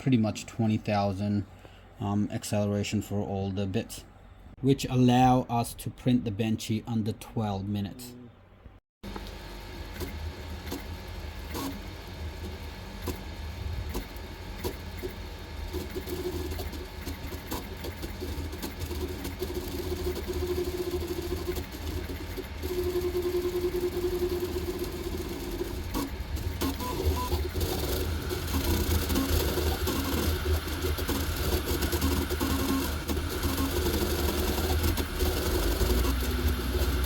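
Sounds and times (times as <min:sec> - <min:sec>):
printer ticking and rattling: 0:09.1 - 0:37.0
stepper motors whining: 0:22.3 - 0:37.0.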